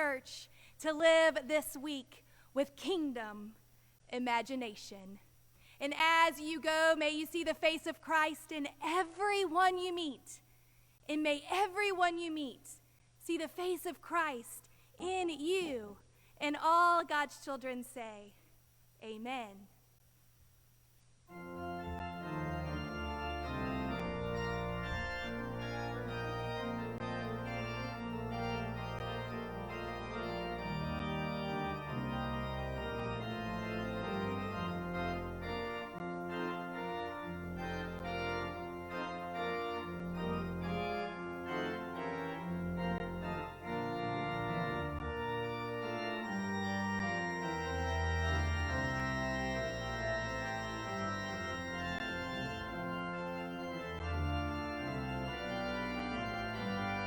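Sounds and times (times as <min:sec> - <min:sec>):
church organ chords: 0:21.3 - 0:57.0.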